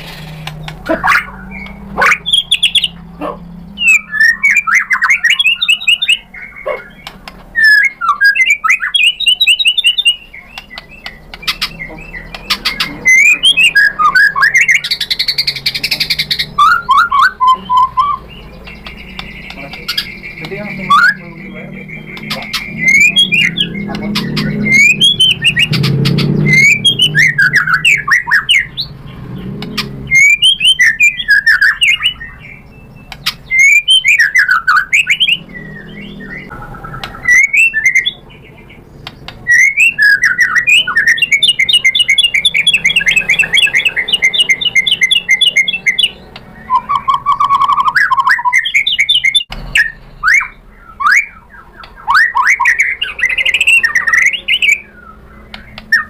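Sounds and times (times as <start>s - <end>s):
bird whistling and chattering song: 0.0s - 56.0s
fast bird trill: 0.0s - 56.0s.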